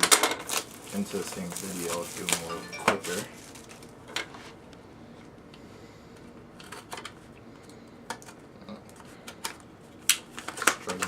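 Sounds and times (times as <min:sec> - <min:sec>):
packaging clicks and crackles: 0:00.0 - 0:03.9, 0:08.1 - 0:11.0
packaging rustling: 0:00.4 - 0:03.9.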